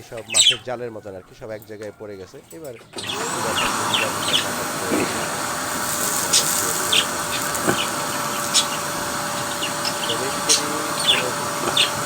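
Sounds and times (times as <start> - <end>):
birds chirping: 0.0 - 12.0
vacuum cleaner running: 2.9 - 12.0.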